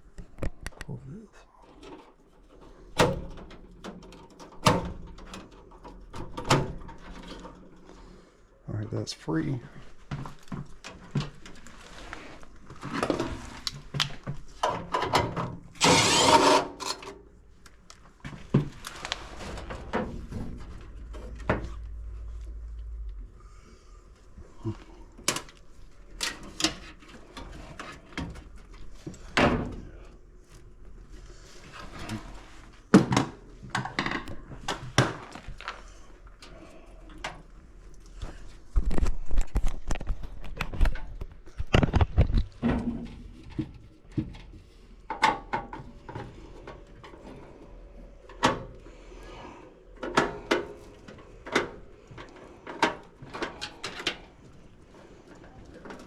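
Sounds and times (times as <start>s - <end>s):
tools and metal parts clunking: 1.6s - 7.9s, 12.8s - 17.2s
loud noisy burst: 15.8s - 16.7s.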